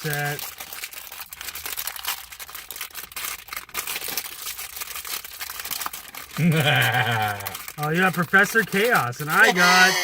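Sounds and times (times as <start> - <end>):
packaging being torn and crinkled: 0.0 - 10.0
person speaking: 6.4 - 10.0.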